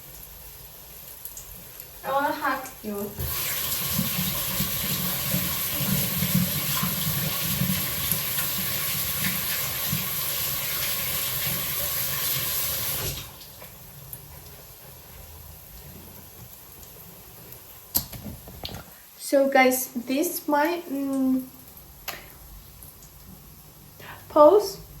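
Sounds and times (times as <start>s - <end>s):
kitchen tap running: 0.0s - 19.0s.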